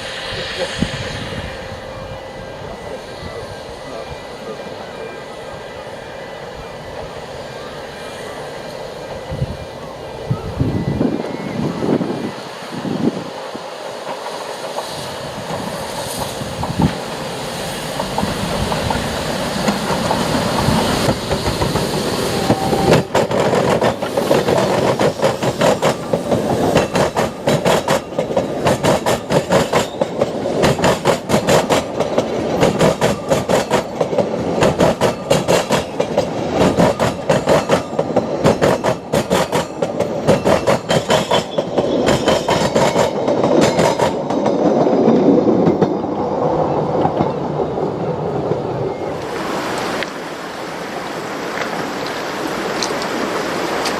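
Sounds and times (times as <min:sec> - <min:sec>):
steam train passing: 0:00.0 - 0:53.9
wheels clattering over rail joints: 0:22.8 - 0:46.0.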